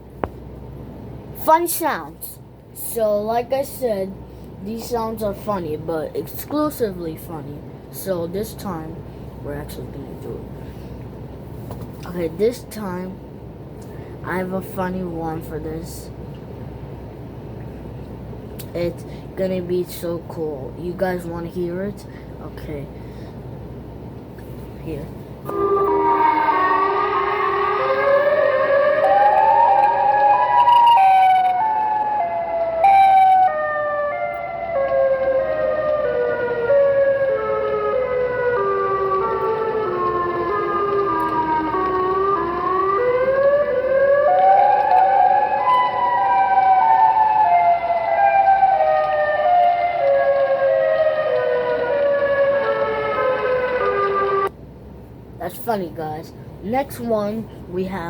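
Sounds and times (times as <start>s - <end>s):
descending tones through speaker: 25.5s - 54.5s.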